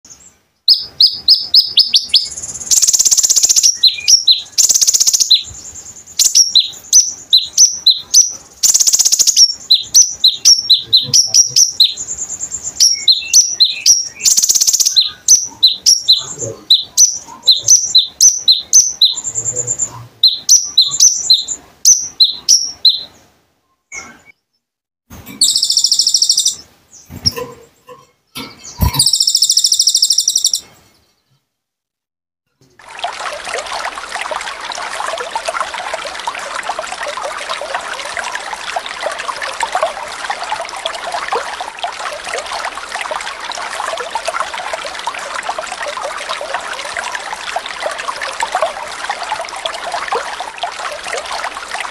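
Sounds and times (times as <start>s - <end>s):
songbird chirping: 0.1s - 24.7s, 25.3s - 31.5s.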